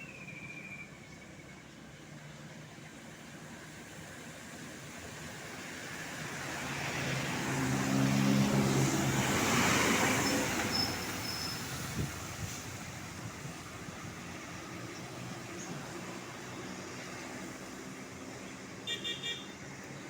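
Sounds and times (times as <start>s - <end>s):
bus driving past: 0.0s - 20.0s.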